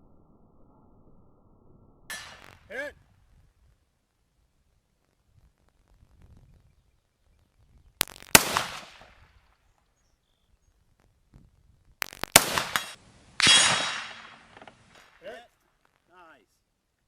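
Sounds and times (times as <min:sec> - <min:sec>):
rifle shots with echo: 0:02.1 - 0:02.6, 0:08.0 - 0:09.1, 0:12.1 - 0:15.2.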